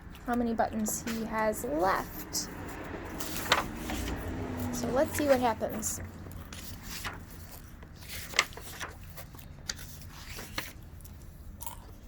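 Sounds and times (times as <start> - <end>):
paper pages turning: 2.1 - 11.4.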